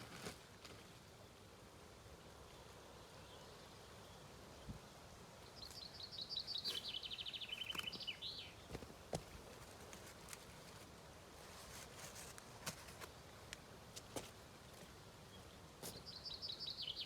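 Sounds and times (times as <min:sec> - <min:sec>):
faint outdoor background noise: 0:00.0 - 0:17.0
songbird singing: 0:02.5 - 0:08.9, 0:14.7 - 0:17.0.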